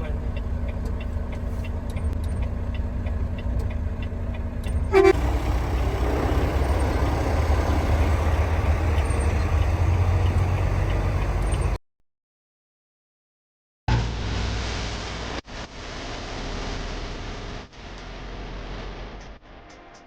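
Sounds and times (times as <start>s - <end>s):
truck engine rumbling: 0.0s - 11.8s
truck horn toot: 4.7s - 11.8s.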